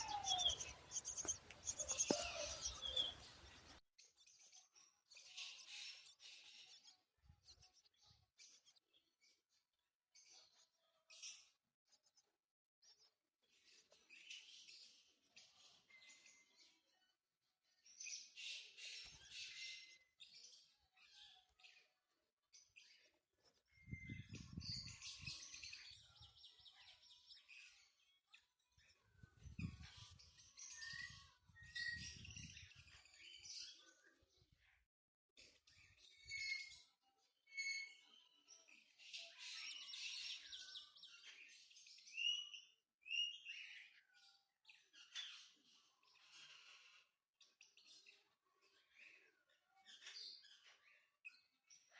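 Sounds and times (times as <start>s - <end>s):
birds chirping and calling: 0.0s - 3.8s.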